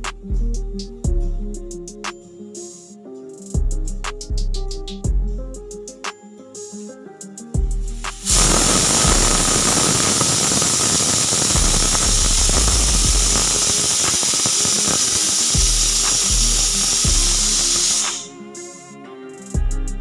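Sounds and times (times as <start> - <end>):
pressure cooker whistle hissing: 8.2 - 18.8.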